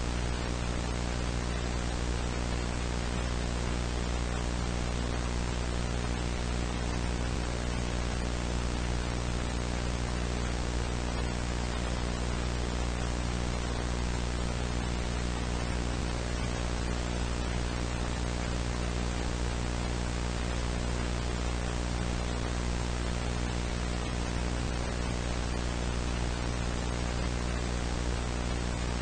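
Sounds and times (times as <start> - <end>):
low buzzy hum: 0.0 - 29.0
static hiss: 0.0 - 29.0.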